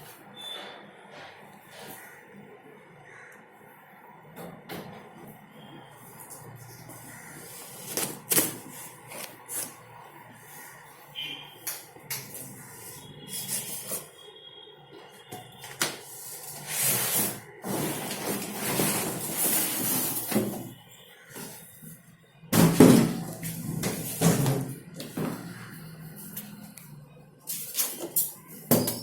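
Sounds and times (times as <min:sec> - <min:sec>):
washing machine knocks and clunks: 0:22.5 - 0:25.3.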